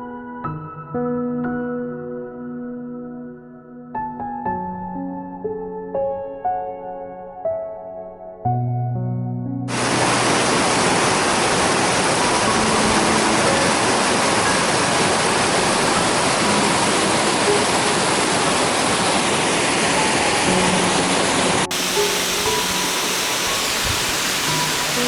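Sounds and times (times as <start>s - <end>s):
soft instrumental music: 0.0s - 9.7s, 20.5s - 25.0s
waterfall rushing: 9.7s - 25.0s.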